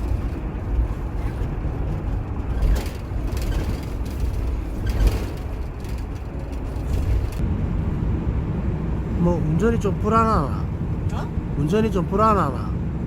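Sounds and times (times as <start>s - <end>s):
knocks and rattles: 0.0s - 7.4s
road and engine rumble: 0.0s - 13.0s.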